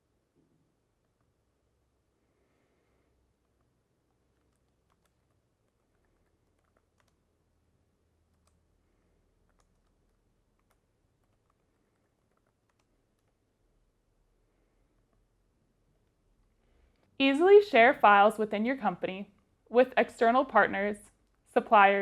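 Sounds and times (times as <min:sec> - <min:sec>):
faint irregular clicks: 0:00.4 - 0:01.6, 0:03.0 - 0:17.2, 0:21.1 - 0:21.5.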